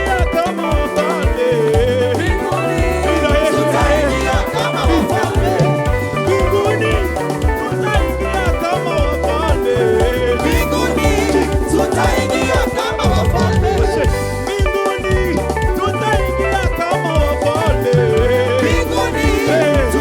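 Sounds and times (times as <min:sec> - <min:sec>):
live band playing upbeat song: 0:00.0 - 0:20.0.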